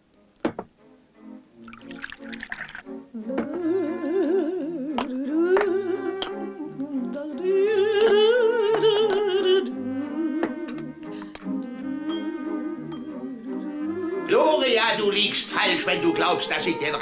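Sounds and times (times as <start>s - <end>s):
vibrato melody: 3.6s - 17.0s.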